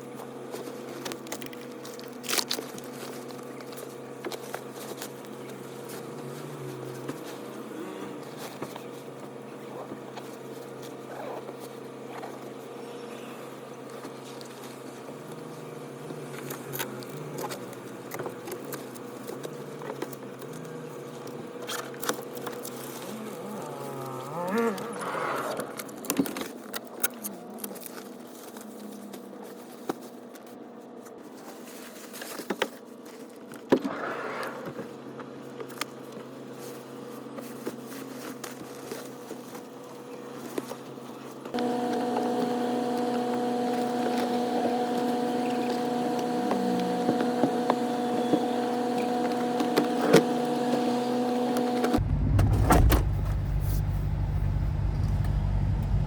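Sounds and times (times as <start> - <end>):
electric hum: 41.6 - 56.0
engine starting with low rumble: 51.8 - 56.0.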